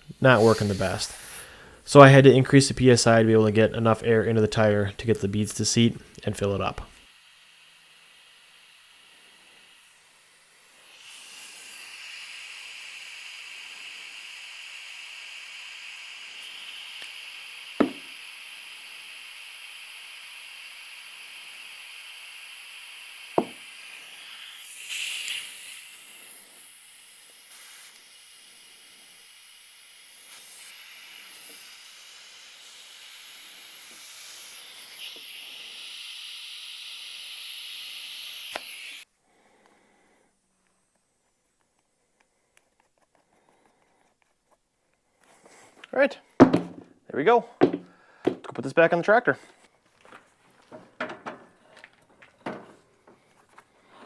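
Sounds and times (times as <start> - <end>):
compressed air hissing: 0.0 - 41.0, 45.3 - 48.5, 49.4 - 54.0
tire bead pops: 17.8 - 18.3, 23.4 - 23.7, 46.4 - 47.0, 47.6 - 48.6, 50.0 - 53.2.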